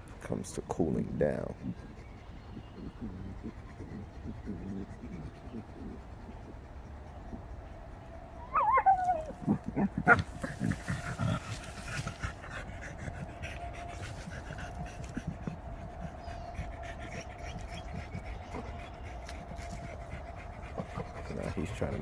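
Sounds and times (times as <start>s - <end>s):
dog panting: 0.0s - 22.0s
dog whining: 8.4s - 11.7s
scuffling: 10.1s - 12.5s.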